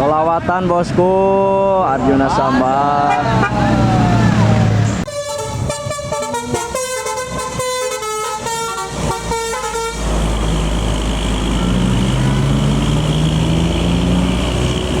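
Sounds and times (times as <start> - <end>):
bus engine rumbling: 0.0 - 15.0
bus horn playing melody: 3.0 - 10.2.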